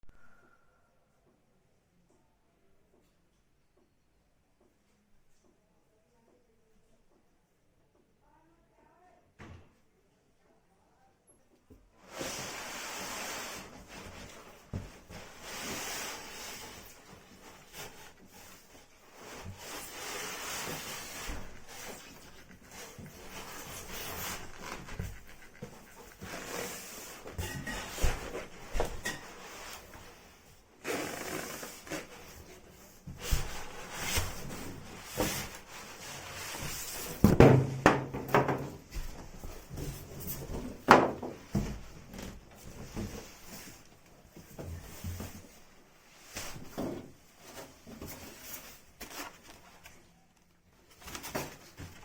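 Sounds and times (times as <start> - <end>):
rubbing and rustling: 12.0 - 52.0.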